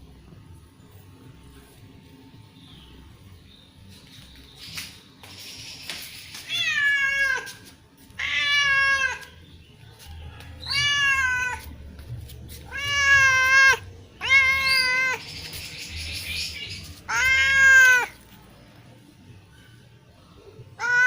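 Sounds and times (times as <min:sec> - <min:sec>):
cat meowing: 0:06.4 - 0:07.6, 0:08.2 - 0:09.4, 0:10.6 - 0:11.7, 0:12.6 - 0:15.2, 0:17.0 - 0:18.2, 0:20.8 - 0:21.0.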